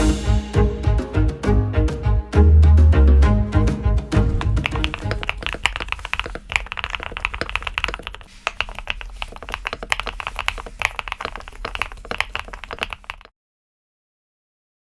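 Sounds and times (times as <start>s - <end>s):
mechanical keyboard typing: 4.0s - 13.3s.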